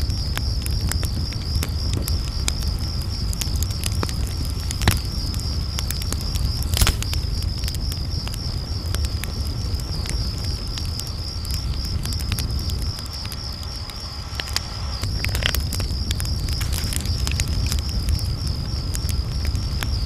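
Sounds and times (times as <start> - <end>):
campfire crackling and popping: 0.0 - 20.0
crickets chirping: 0.0 - 20.0
low rumble: 0.0 - 20.0.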